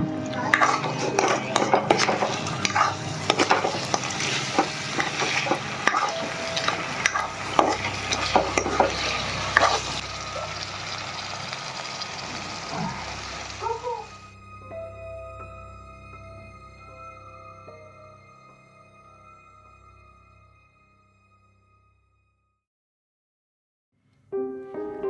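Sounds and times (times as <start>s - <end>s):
food sizzling in a pan: 0.0s - 14.3s
utensil clinking against pan: 0.5s - 10.0s.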